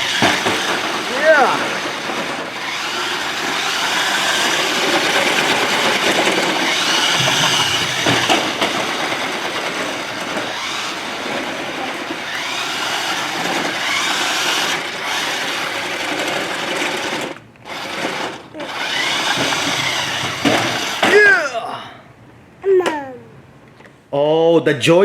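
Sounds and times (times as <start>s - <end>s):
toy car electric motor whirring: 0.0s - 21.4s
knock: 7.1s - 8.8s.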